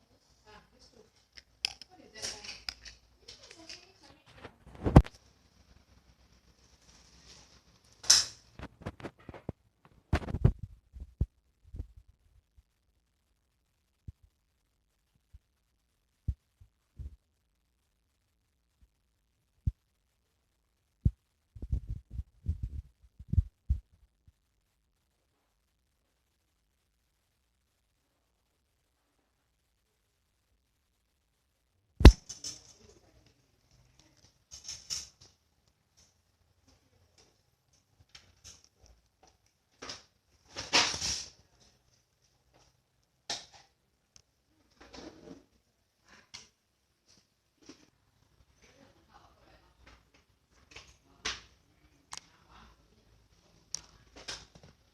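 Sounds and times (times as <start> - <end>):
crackly pops: 1.2 - 6.6, 7.6 - 12.0, 32.0 - 32.7.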